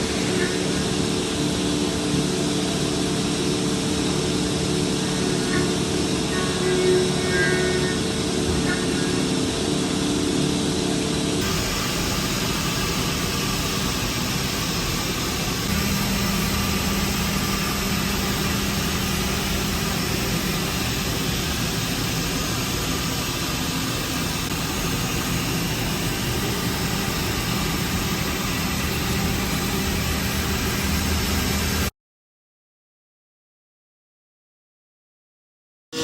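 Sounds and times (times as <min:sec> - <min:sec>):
milling machine humming: 0:00.0 - 0:31.9.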